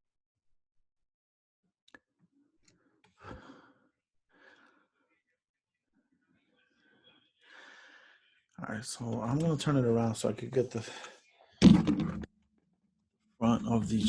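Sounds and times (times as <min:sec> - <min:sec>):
soft breathing: 0:02.7 - 0:05.2, 0:06.6 - 0:08.4, 0:10.8 - 0:11.4.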